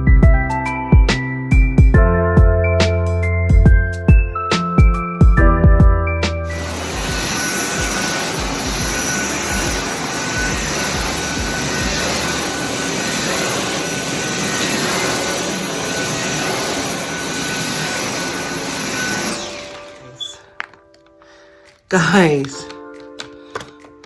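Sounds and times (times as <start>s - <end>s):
vacuum cleaner running: 6.5s - 20.4s.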